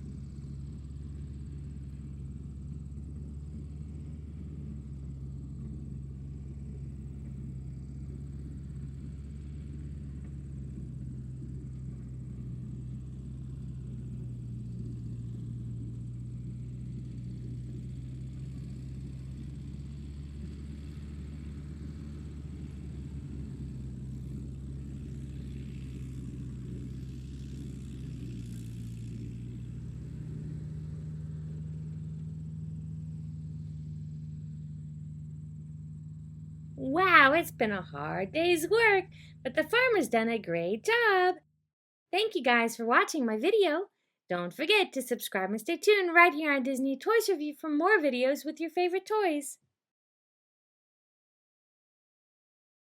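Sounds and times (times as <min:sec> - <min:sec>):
tractor engine running: 0:00.0 - 0:41.3.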